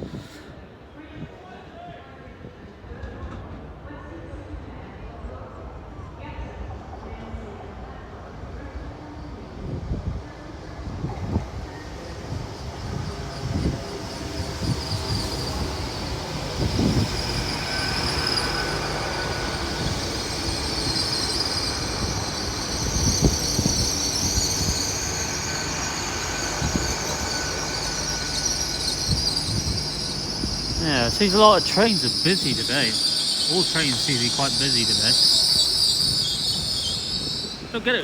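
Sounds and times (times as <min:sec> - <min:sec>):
train rumble: 0:08.4 - 0:38.0
high-pitched wheel squeal: 0:13.4 - 0:38.0.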